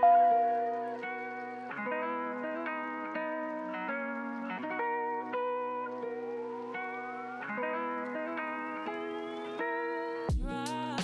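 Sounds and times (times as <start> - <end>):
sustained instrumental chords: 0.0 - 1.2.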